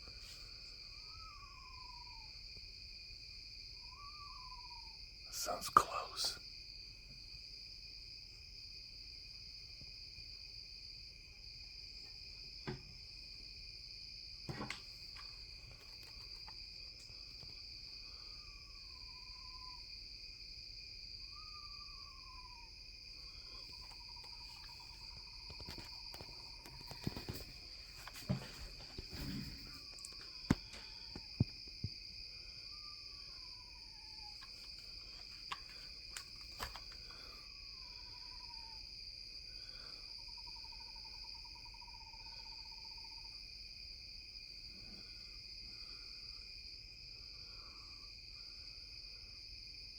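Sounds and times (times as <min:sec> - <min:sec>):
high insect chorus: 0:00.0 - 0:49.9
owl trill: 0:00.2 - 0:02.4, 0:03.8 - 0:06.2, 0:18.0 - 0:19.9, 0:21.2 - 0:31.4, 0:36.8 - 0:38.9, 0:39.5 - 0:43.4
owl calling: 0:00.8 - 0:02.4, 0:03.9 - 0:05.0, 0:21.3 - 0:31.4.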